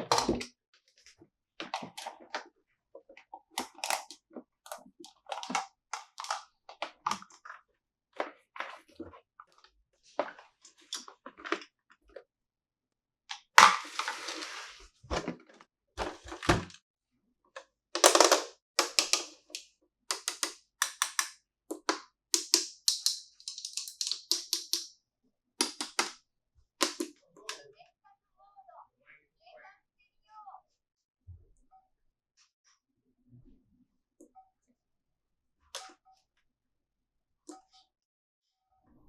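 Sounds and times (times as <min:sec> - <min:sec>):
rustling noise: 0:13.8 - 0:15.3
plastic toy pieces clicking: 0:18.0 - 0:24.9, 0:25.6 - 0:26.2, 0:26.8 - 0:27.1.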